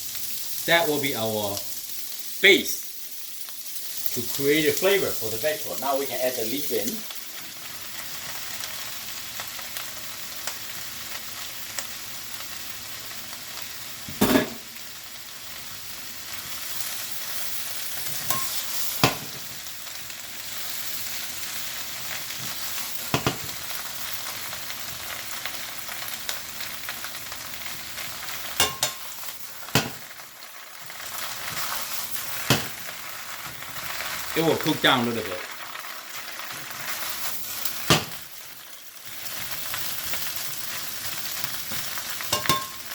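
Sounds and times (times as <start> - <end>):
vegetables sizzling in hot oil: 0.0 - 42.9
utensil knocking against pan: 23.1 - 23.4, 28.6 - 29.0, 42.4 - 42.8.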